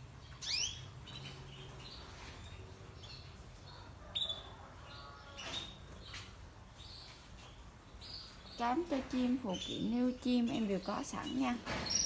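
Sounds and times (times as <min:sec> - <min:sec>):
canaries chirping: 0:00.0 - 0:12.0.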